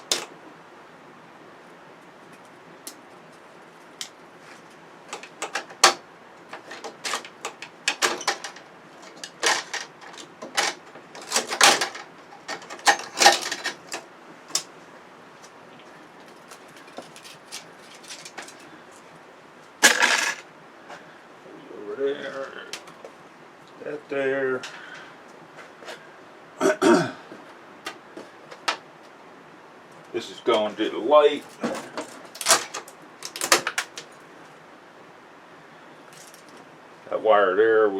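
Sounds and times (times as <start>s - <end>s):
small plastic parts clicking and scraping: 2.3s - 14.7s, 16.2s - 19.0s, 31.4s - 34.2s, 36.1s - 36.6s.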